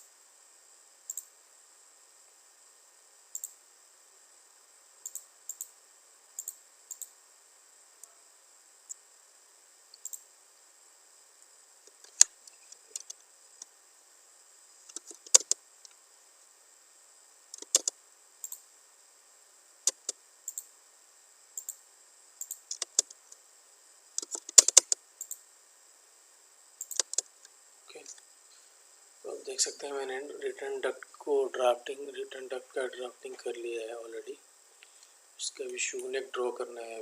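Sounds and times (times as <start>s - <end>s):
mouse and keyboard clicks: 11.9s - 13.2s, 14.9s - 15.6s, 17.6s - 18.6s, 19.9s - 20.7s, 22.4s - 23.2s, 24.2s - 25.4s, 26.8s - 27.3s.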